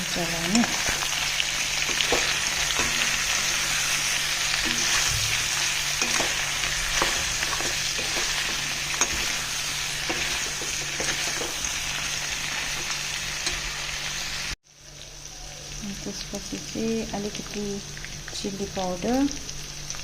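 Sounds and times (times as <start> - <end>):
pork sizzling in a pan: 0.0 - 20.0
spoon scraping a pan: 0.6 - 13.8.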